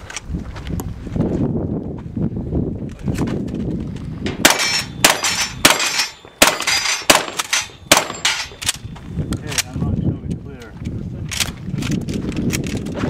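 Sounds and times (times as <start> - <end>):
shotgun shots: 4.3 - 8.6
metallic ringing of steel targets: 4.3 - 8.8.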